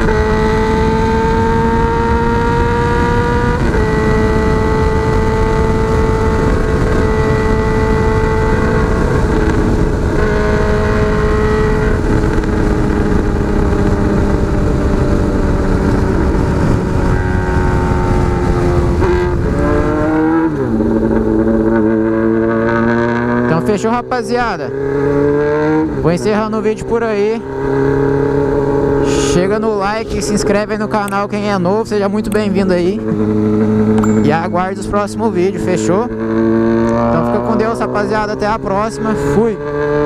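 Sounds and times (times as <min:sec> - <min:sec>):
wind on microphone: 0:00.0 - 0:23.5
motorcycle engine running: 0:00.0 - 0:40.0.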